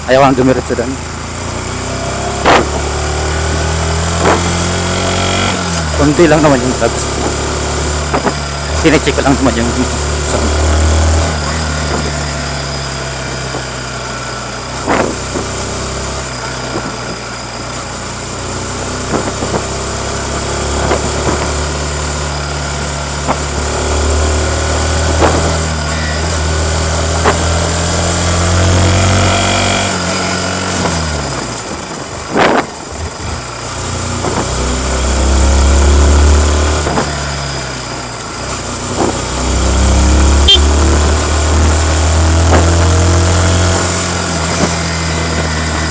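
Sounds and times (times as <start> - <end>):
motorcycle engine revving: 0.0 - 45.9
sharp knock: 2.4 - 2.8, 25.2 - 25.5.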